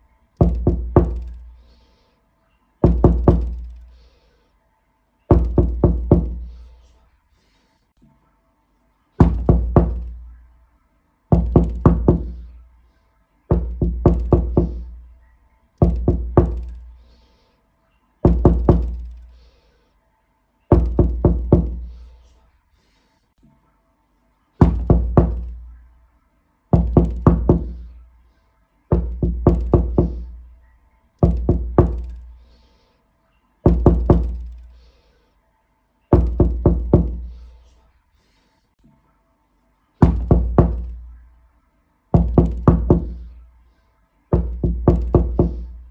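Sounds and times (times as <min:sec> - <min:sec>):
knocking on a door: 0:00.4 - 0:01.5, 0:02.8 - 0:03.8, 0:05.3 - 0:06.5, 0:09.2 - 0:10.3, 0:11.3 - 0:12.5, 0:13.5 - 0:15.0, 0:15.8 - 0:16.9, 0:18.2 - 0:19.2, 0:20.7 - 0:21.9, 0:24.6 - 0:25.7, 0:26.8 - 0:28.0, 0:28.9 - 0:30.4, 0:31.2 - 0:32.3, 0:33.7 - 0:34.6, 0:36.1 - 0:37.3, 0:40.0 - 0:41.1, 0:42.2 - 0:43.3, 0:44.4 - 0:45.8.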